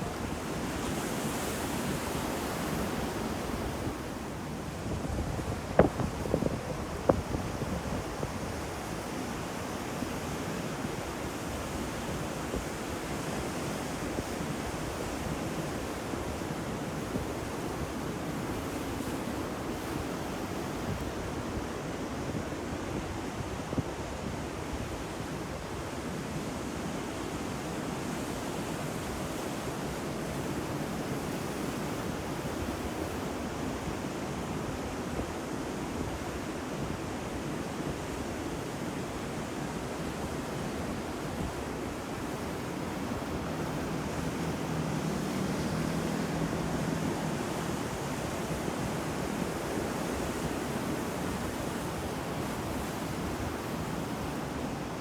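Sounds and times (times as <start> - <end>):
waves breaking: 39.0 - 55.0.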